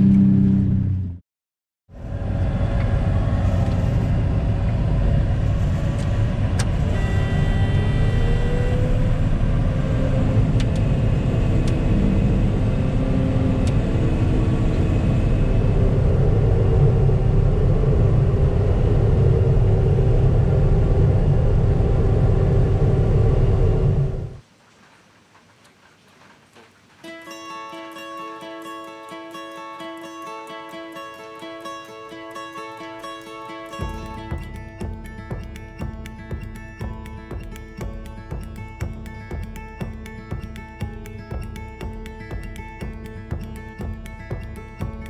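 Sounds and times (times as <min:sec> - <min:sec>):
truck engine and road rumble: 0:02.0 - 0:24.4.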